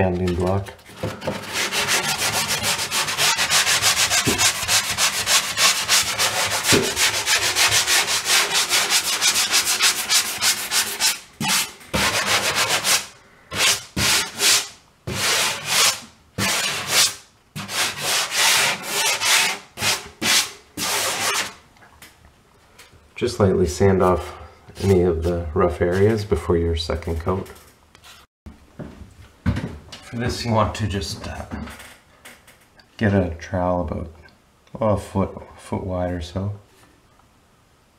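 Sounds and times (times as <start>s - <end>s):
sanding block on drywall: 1.2s - 21.6s.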